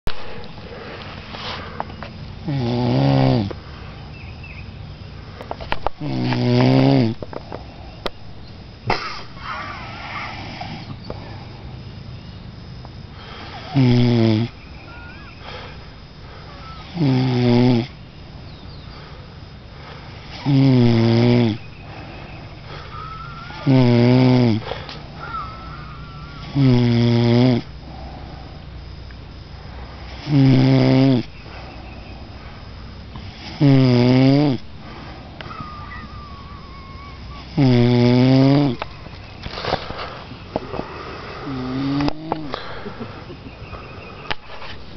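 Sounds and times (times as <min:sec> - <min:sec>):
quiet breathing: 0:00.1 - 0:02.3, 0:07.3 - 0:08.4, 0:09.7 - 0:13.8, 0:14.7 - 0:16.9, 0:18.4 - 0:20.5, 0:21.6 - 0:23.4, 0:24.6 - 0:26.6, 0:27.6 - 0:30.3, 0:31.2 - 0:33.6, 0:34.6 - 0:37.6, 0:38.8 - 0:44.8
man snoring: 0:02.4 - 0:03.5, 0:06.0 - 0:07.2, 0:13.2 - 0:14.6, 0:16.5 - 0:18.0, 0:20.2 - 0:21.6, 0:23.4 - 0:24.8, 0:26.4 - 0:27.7, 0:30.1 - 0:31.3, 0:33.3 - 0:34.7, 0:37.4 - 0:38.8, 0:40.9 - 0:42.9.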